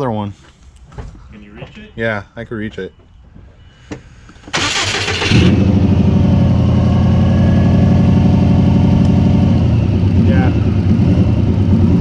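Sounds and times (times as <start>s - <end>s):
starter cranking engine: 4.5s - 5.8s.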